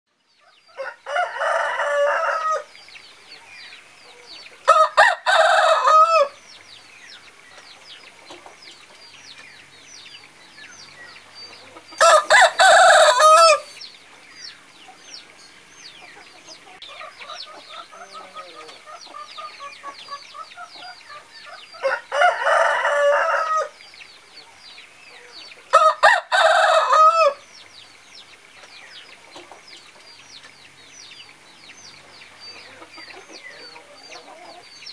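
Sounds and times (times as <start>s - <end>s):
roosters crowing: 0.4s - 2.8s, 4.6s - 6.4s, 11.4s - 13.9s, 16.8s - 23.8s, 25.4s - 27.5s
distant rooster crowing: 0.7s - 2.7s, 4.7s - 6.4s, 12.0s - 13.8s, 21.5s - 23.8s, 25.7s - 27.4s.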